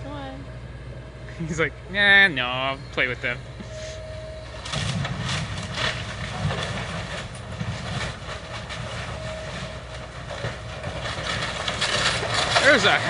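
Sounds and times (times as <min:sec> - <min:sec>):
excavator diesel engine under load: 0:01.4 - 0:13.0
bricks and debris clattering: 0:04.7 - 0:13.0.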